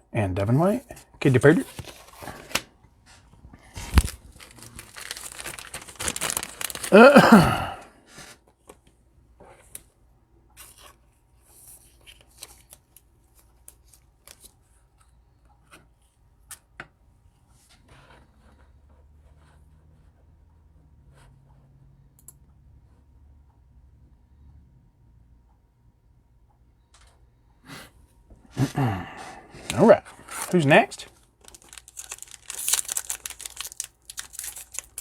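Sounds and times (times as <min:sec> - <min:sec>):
wrapper tearing and crinkling: 0:03.8 - 0:07.7, 0:31.4 - 0:35.0.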